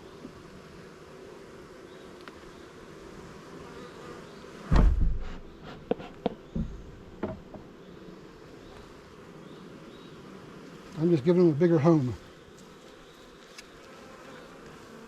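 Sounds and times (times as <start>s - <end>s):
bees buzzing: 0.0s - 15.0s
loud thump: 4.7s - 5.5s, 6.5s - 7.6s
wooden hive frames knocking: 4.7s - 7.8s.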